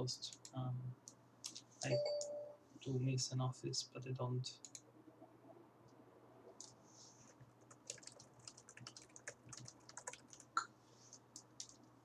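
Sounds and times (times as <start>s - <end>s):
computer keyboard typing: 7.6s - 10.7s, 11.3s - 11.9s.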